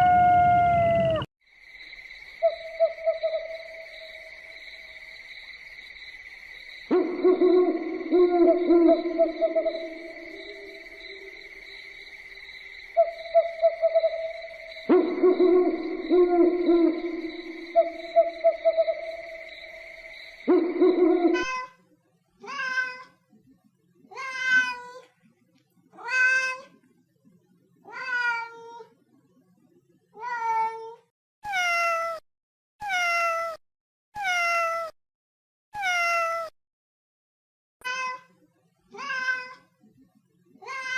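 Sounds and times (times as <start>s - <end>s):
cat meowing: 22.4s - 23.2s, 24.1s - 25.0s, 26.0s - 26.7s, 27.9s - 28.8s, 31.4s - 32.2s, 32.8s - 33.6s, 34.2s - 34.9s, 35.8s - 36.5s, 39.0s - 39.7s, 40.6s - 40.9s.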